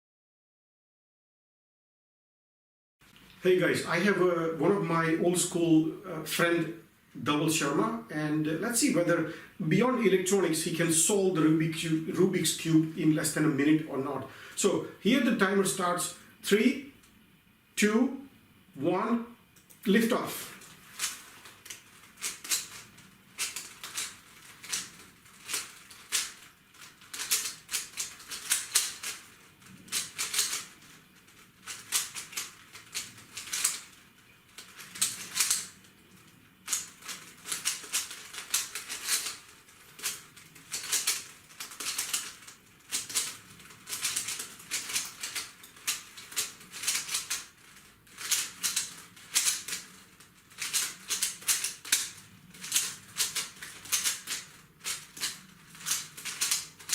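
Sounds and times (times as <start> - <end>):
puzzle cube plastic clicking: 20.5 - 56.9.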